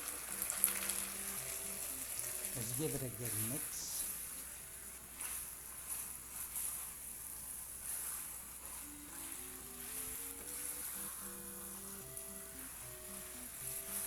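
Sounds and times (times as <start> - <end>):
chicken sizzling in hot pan: 0.0 - 4.6
soft background music: 0.0 - 14.0.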